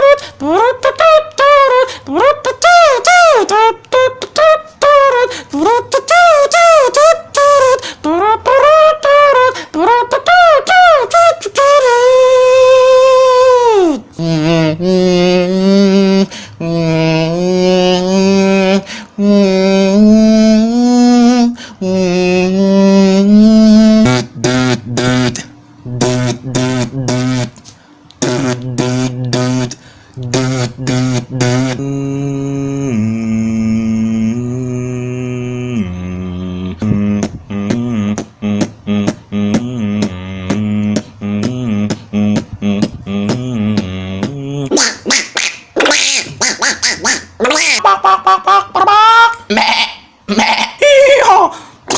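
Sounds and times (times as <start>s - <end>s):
man droning held notes: 0.0s - 44.8s
gliding mouth-made effect: 0.0s - 51.9s
hummed bass line: 12.1s - 27.6s, 28.2s - 44.8s
beatboxing drum hits: 23.8s - 31.8s, 36.8s - 47.8s.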